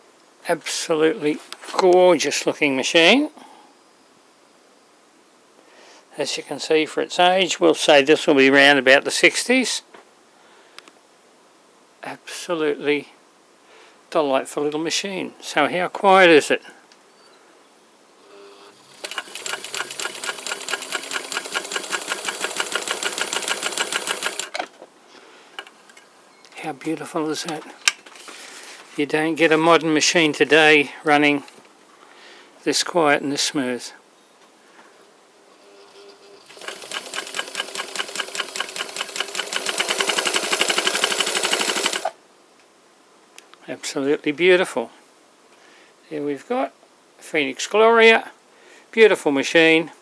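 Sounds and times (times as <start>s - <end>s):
sewing machine running: 18.4s - 24.5s, 35.6s - 42.2s.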